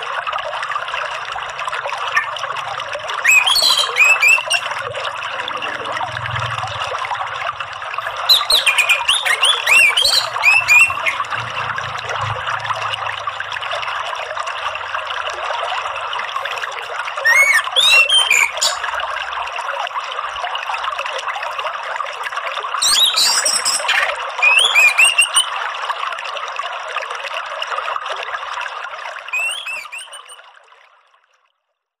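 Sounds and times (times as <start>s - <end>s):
trickling water: 0.0s - 32.0s
songbird chirping: 3.2s - 4.6s, 8.3s - 11.2s, 17.2s - 18.9s, 29.4s - 30.4s.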